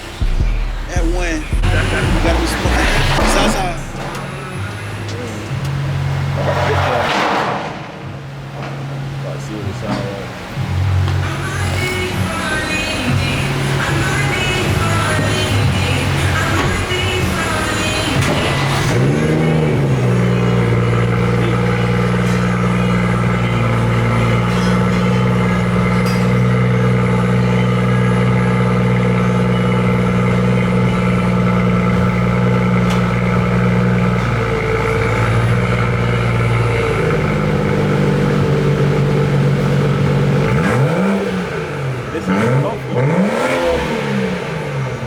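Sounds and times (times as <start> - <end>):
car engine droning exhaust: 0.0 - 45.0.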